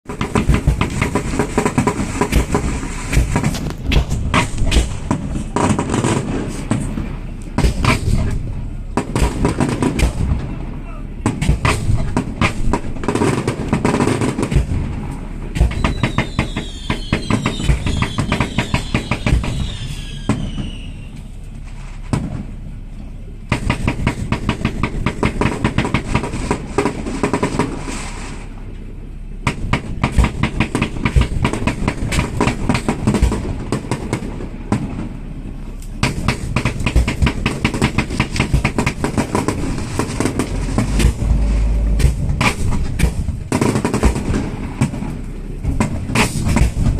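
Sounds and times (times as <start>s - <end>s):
fireworks crackling bangs: 0.1s - 28.7s, 29.4s - 46.9s
falling firework whistles: 15.6s - 22.5s.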